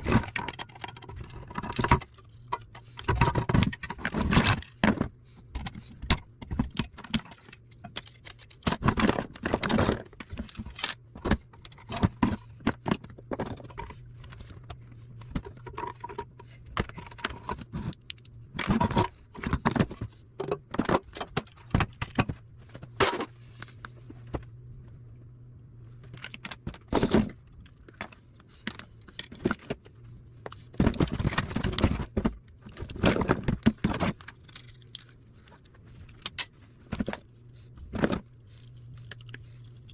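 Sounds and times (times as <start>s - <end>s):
steady low hum: 0.0s - 39.9s
metal parts and tools clinking: 10.3s - 11.0s.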